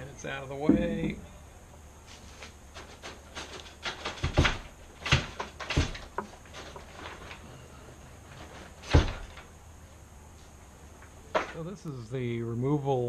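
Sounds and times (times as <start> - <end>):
knocks of mast sections: 0.6 - 1.3, 2.8 - 7.2.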